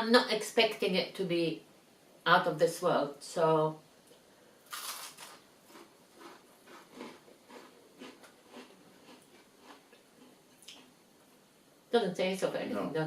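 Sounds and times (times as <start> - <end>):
person chewing: 4.7 - 11.0.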